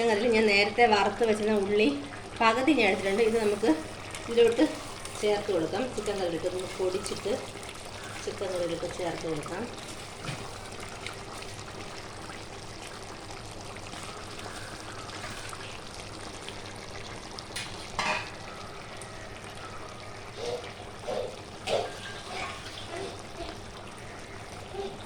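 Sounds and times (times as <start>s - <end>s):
curry sizzling in a pot: 0.0s - 25.0s
spoon scraping a pot: 21.7s - 23.0s.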